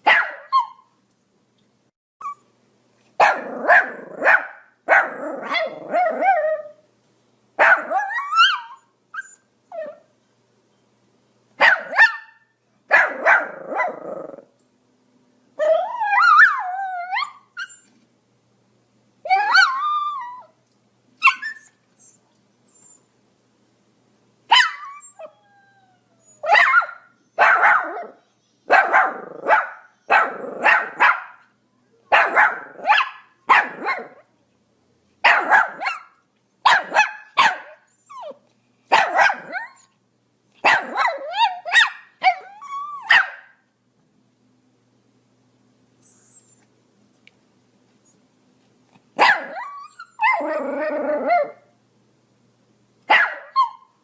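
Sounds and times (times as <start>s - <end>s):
small dog barking: 0.0s - 0.9s, 3.2s - 6.7s, 7.6s - 8.8s, 11.6s - 14.1s, 24.5s - 25.0s, 26.4s - 31.5s, 32.1s - 34.3s, 35.2s - 39.8s, 40.6s - 43.6s, 49.2s - 50.6s, 53.1s - 53.9s
dog whining: 2.2s - 2.5s, 7.8s - 10.1s, 15.6s - 18.0s, 19.3s - 20.6s, 21.2s - 23.0s, 24.6s - 28.2s, 37.9s - 38.4s, 39.4s - 39.9s, 40.8s - 43.2s, 46.0s - 46.7s, 49.3s - 51.6s.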